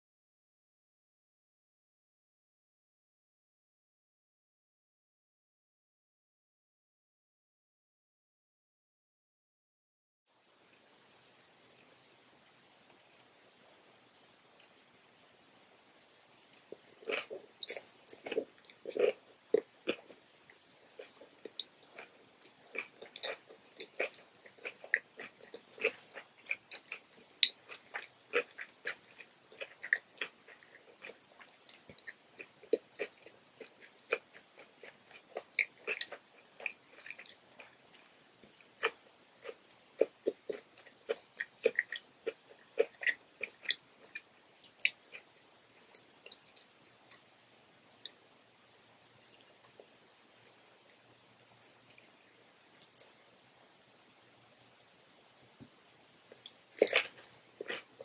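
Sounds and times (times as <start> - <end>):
crunchy chewing: 16.4 - 47.2, 56.3 - 58.0.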